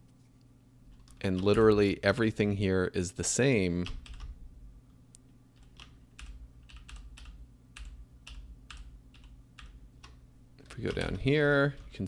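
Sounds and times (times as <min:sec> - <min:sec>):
faint low hum: 0:00.0 - 0:12.0
computer keyboard typing: 0:03.8 - 0:04.4, 0:05.6 - 0:12.0.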